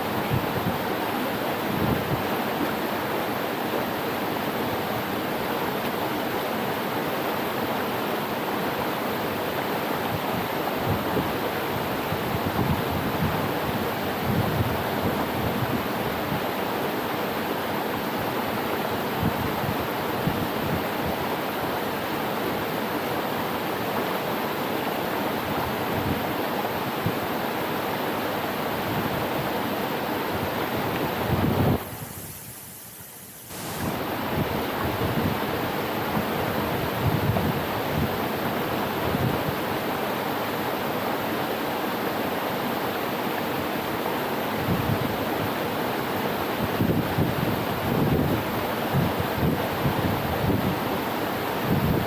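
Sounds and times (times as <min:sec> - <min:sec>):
waterfall rushing: 0:00.0 - 0:52.0
wind buffeting microphone: 0:30.3 - 0:32.6, 0:33.5 - 0:39.6, 0:46.6 - 0:50.9, 0:51.6 - 0:52.0.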